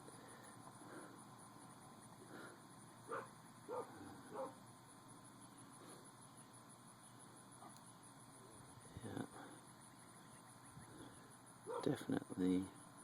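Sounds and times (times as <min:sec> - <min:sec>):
faint dog barking: 0:03.1 - 0:04.6, 0:11.6 - 0:12.1.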